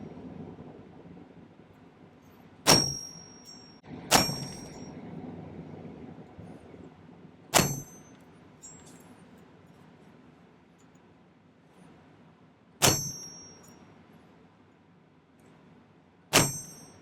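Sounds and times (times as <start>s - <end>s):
hammer striking metal stamp: 2.7s - 3.2s, 4.1s - 4.8s, 7.6s - 8.1s, 12.8s - 13.5s, 16.3s - 17.0s.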